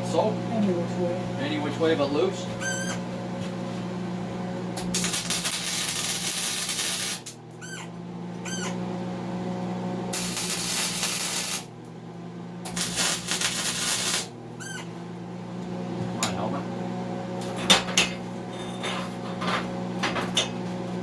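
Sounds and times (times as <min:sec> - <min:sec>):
welder low hum: 0:00.0 - 0:08.7, 0:09.6 - 0:15.3
welding arc crackle: 0:04.8 - 0:07.5, 0:10.1 - 0:11.9, 0:12.6 - 0:14.4.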